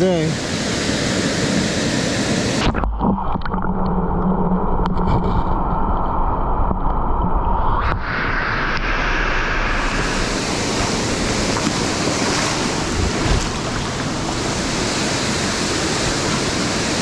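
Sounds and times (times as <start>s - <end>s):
waterfall rushing: 0.0s - 2.7s, 9.7s - 17.0s.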